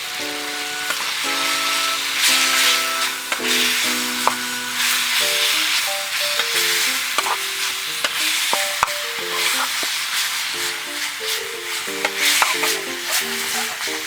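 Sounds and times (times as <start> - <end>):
melody of short notes: 0.0 - 9.8
food sizzling in a wok: 0.0 - 14.0.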